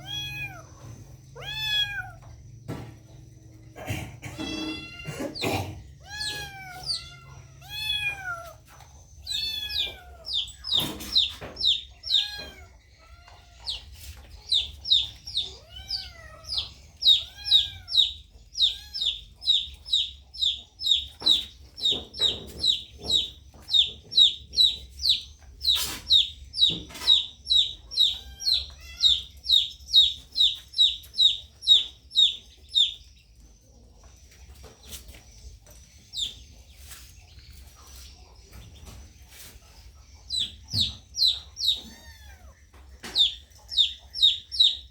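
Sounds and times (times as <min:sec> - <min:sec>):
cat meowing: 0:00.0 - 0:00.8, 0:01.4 - 0:02.3, 0:04.4 - 0:05.4, 0:06.0 - 0:08.6, 0:09.2 - 0:10.4, 0:12.0 - 0:13.6, 0:15.4 - 0:19.2, 0:41.8 - 0:42.6
baby bird peeping: 0:00.0 - 0:44.9.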